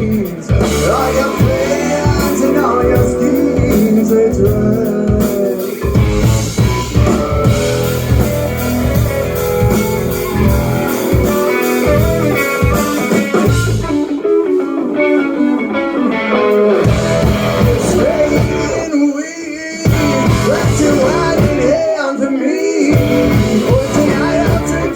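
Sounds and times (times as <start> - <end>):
bass guitar: 0.0 - 19.0, 19.9 - 22.0, 22.9 - 24.9
drums: 0.0 - 24.9
electric guitar: 0.0 - 24.9.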